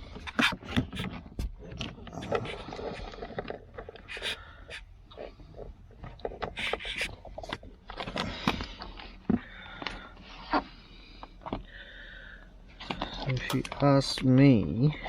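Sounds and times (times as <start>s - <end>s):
plastic connectors clicking and rustling: 12.8s - 15.0s.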